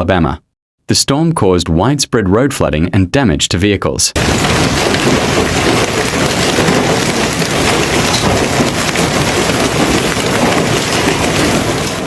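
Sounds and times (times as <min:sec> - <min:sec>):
heavy rain on hard surfaces: 0:04.2 - 0:12.0.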